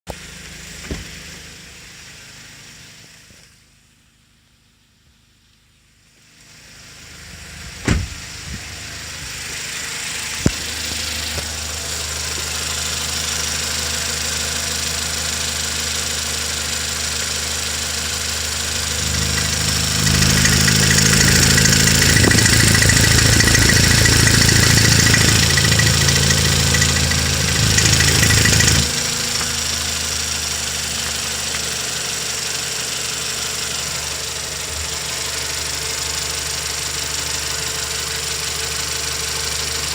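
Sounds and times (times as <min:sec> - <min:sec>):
car engine idling with knock: 0:00.1 - 0:01.7, 0:07.4 - 0:37.6
sharp clicks: 0:18.9 - 0:29.5.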